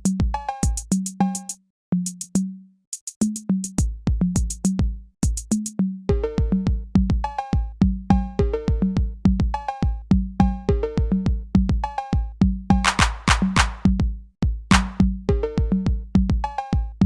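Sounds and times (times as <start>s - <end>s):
drum machine beat: 0.0s - 2.4s, 3.0s - 5.7s, 12.8s - 14.0s, 14.7s - 15.1s.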